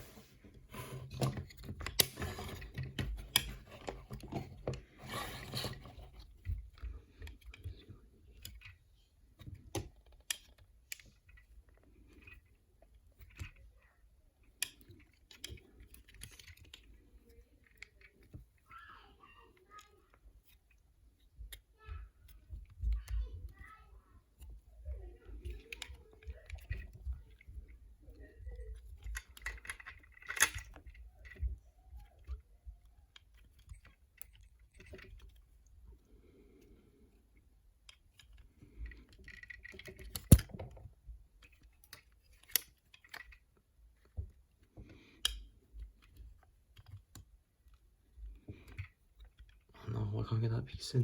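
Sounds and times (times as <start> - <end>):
plastic toy parts clicking: 0.7 - 49.8.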